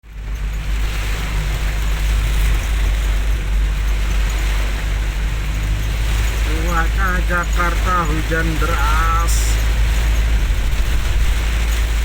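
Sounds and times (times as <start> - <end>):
low vehicle rumble: 0.0 - 12.0
heavy rain falling: 1.4 - 12.0.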